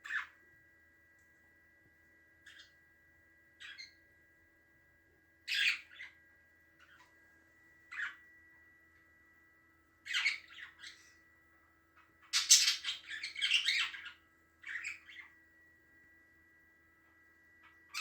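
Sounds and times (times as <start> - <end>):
budgerigar chattering and squawking: 0.0 - 0.3, 5.5 - 6.1, 10.1 - 11.0, 12.2 - 15.3.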